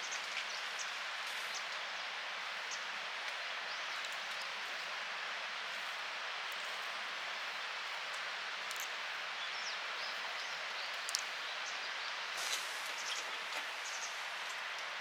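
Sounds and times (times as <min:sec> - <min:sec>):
outdoor background hiss: 0:00.0 - 0:15.0
faint high ticks: 0:10.4 - 0:11.3.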